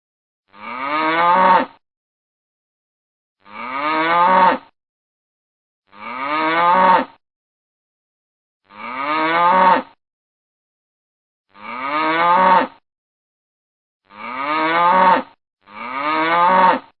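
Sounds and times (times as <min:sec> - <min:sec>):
cow mooing: 0:00.5 - 0:01.8, 0:03.4 - 0:04.7, 0:05.9 - 0:07.2, 0:08.7 - 0:10.0, 0:11.5 - 0:12.8, 0:14.1 - 0:16.9.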